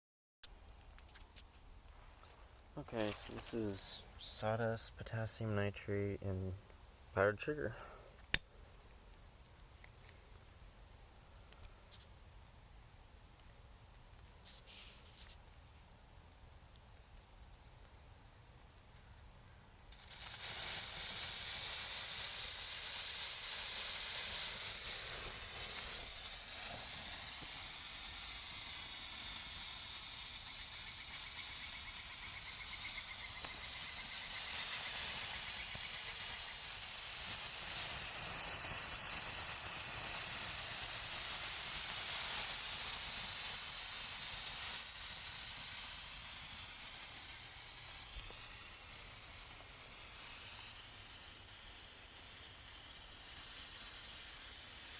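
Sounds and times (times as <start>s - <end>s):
sparkler fuse hissing: 3.0s - 5.4s, 19.9s - 54.9s.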